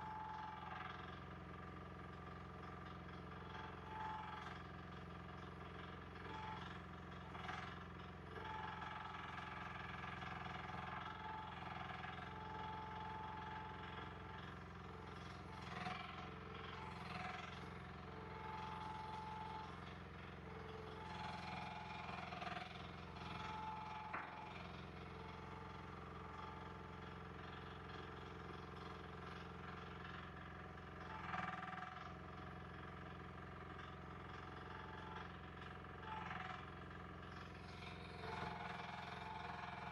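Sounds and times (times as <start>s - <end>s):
machine engine running: 10.8s - 30.6s, 37.4s - 39.9s.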